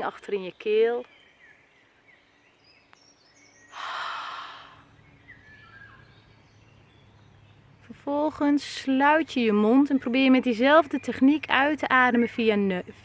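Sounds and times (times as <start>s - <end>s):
breathy exhale: 3.7s - 4.9s.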